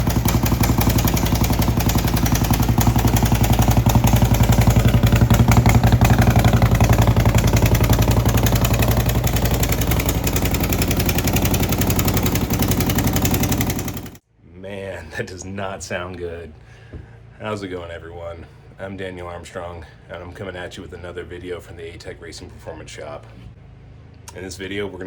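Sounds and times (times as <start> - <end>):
motorcycle engine idling: 0.0 - 14.2.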